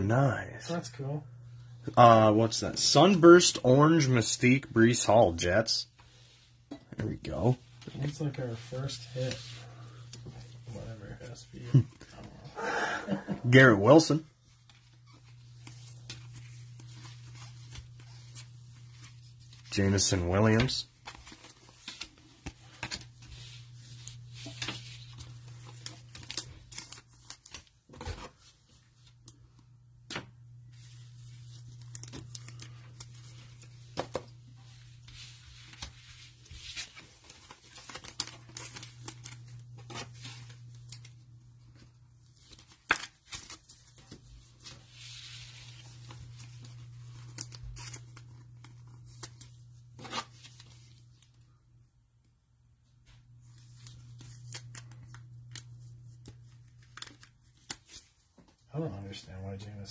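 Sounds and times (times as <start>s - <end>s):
cellophane wrapper crinkling: 14.6s - 27.8s, 30.8s - 34.0s, 34.6s - 41.2s.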